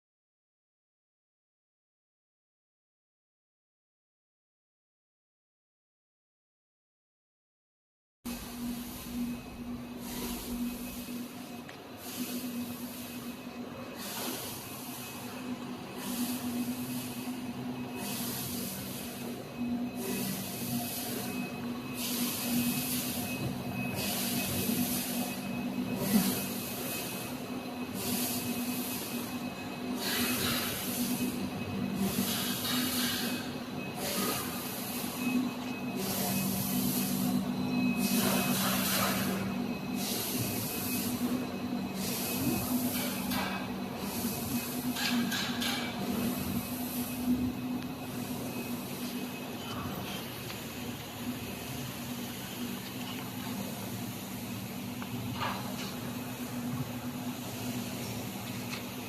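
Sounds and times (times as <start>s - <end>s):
machine humming: 8.3s - 59.0s
machine hissing bursts: 8.4s - 15.3s, 15.9s - 35.4s, 36.0s - 47.3s.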